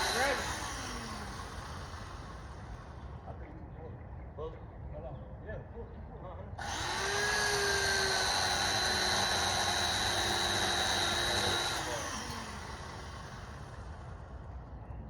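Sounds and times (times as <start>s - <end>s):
chainsaw running at high revs: 0.0s - 3.0s, 6.6s - 14.3s.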